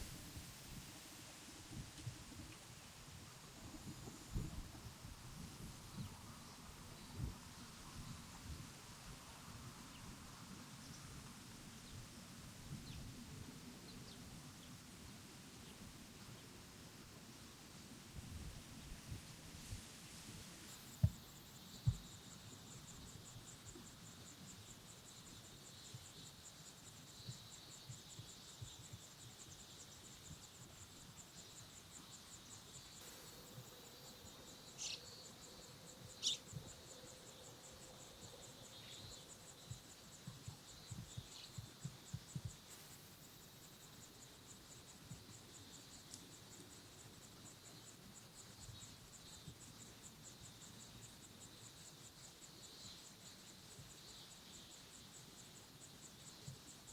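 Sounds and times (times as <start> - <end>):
insect trilling: 33.2 - 38.1.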